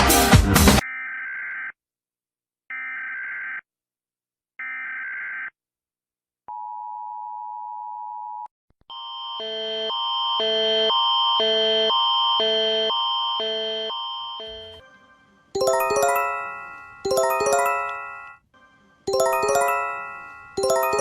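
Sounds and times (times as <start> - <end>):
multi-tone alarm: 0.8 - 1.8, 2.7 - 3.6, 8.9 - 14.9, 15.6 - 18.4, 19.1 - 21.0.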